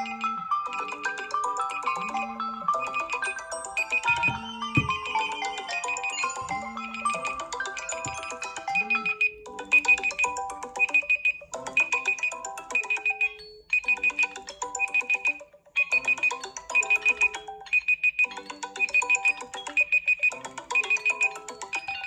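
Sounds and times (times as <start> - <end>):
phone ringtone melodies: 0.0 - 22.0
high electronic alarm beeping: 2.0 - 5.1, 8.2 - 14.2.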